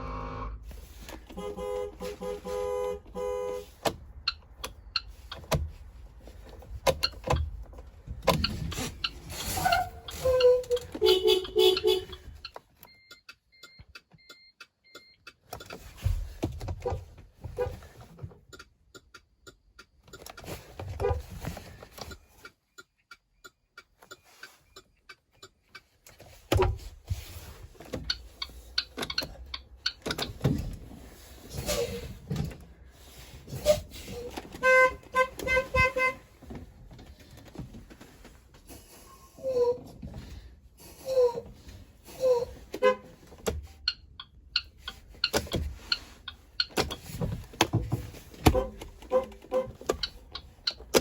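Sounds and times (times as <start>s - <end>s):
school bus horn honking: 0.0s - 0.6s, 1.2s - 3.8s, 9.4s - 12.4s, 33.6s - 36.4s, 42.2s - 43.2s, 48.4s - 50.0s.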